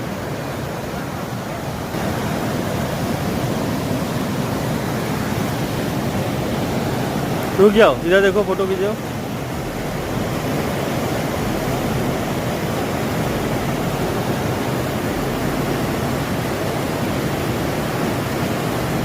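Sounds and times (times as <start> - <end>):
rushing river water: 0.0 - 19.0.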